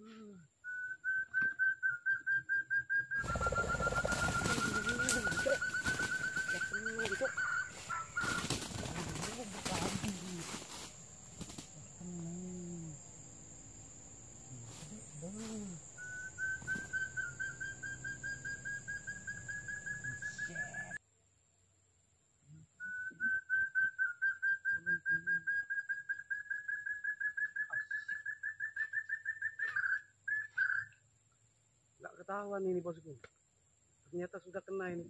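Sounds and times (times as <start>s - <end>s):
quail whistled call: 0.7s - 8.6s, 16.0s - 21.0s, 22.8s - 31.0s.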